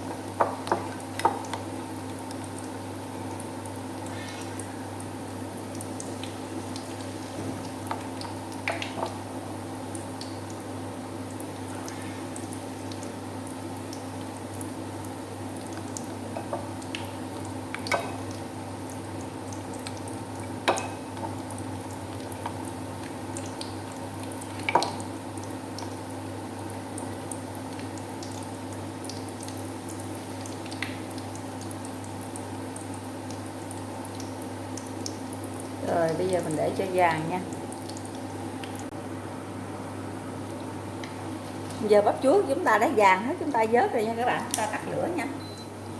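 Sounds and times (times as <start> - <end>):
sharp clicks in frying oil: 0.0 - 2.7, 5.7 - 9.2, 9.8 - 10.7, 13.8 - 19.0, 19.6 - 26.1, 26.9 - 35.7, 37.8 - 38.9, 44.4 - 44.7
oil bubbling while deep-frying: 0.0 - 39.2.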